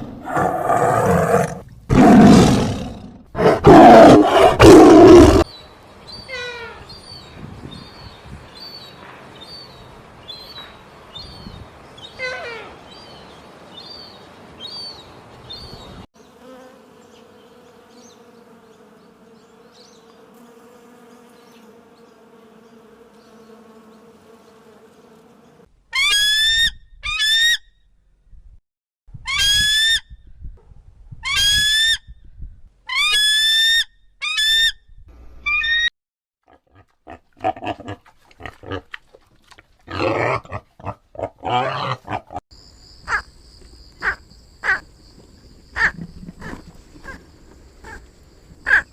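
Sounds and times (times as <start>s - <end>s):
rough animal grunting: 0.0s - 5.5s, 39.9s - 42.4s, 45.8s - 47.2s.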